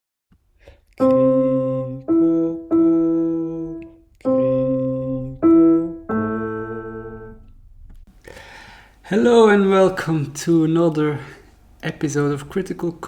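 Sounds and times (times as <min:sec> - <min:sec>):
sustained keyboard chords: 0:01.0 - 0:08.1.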